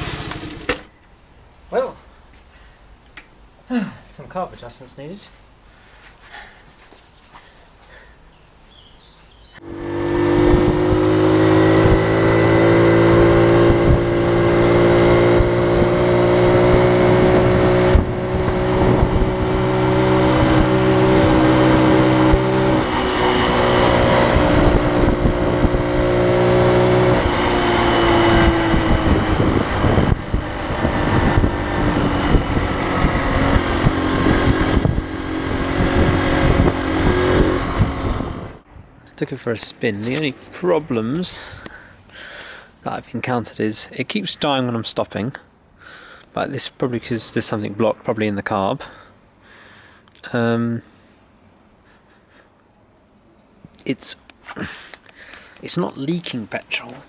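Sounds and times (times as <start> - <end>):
moped engine running: 0.0 - 0.9, 9.6 - 38.6.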